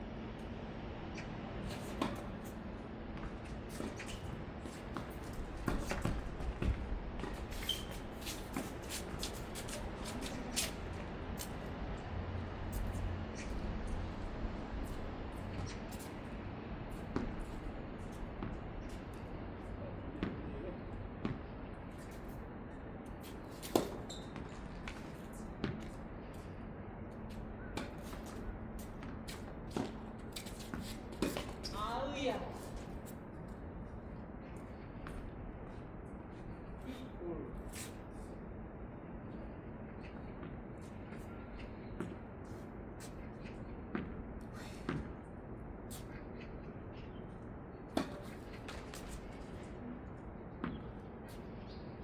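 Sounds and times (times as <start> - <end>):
shoes scuffing on court: 1.1 - 11.7, 23.2 - 26.6, 27.3 - 38.3, 39.3 - 45.3, 45.9 - 51.6.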